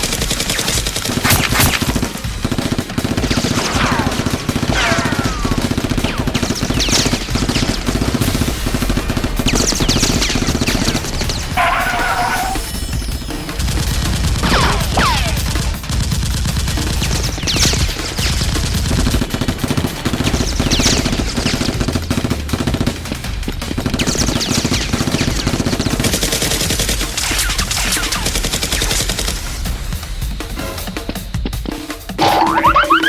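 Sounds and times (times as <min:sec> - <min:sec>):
rapid automatic gunfire: 0:00.0 - 0:30.3
falling whistle: 0:11.6 - 0:13.1, 0:32.2 - 0:33.0.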